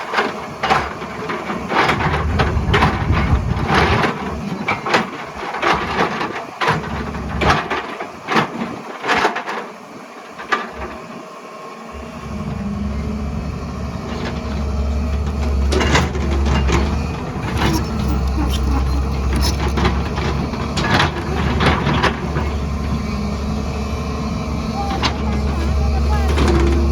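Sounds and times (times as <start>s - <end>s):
diesel engine drone: 11.9s - 26.9s
bucket scraping rock: 15.5s - 22.8s.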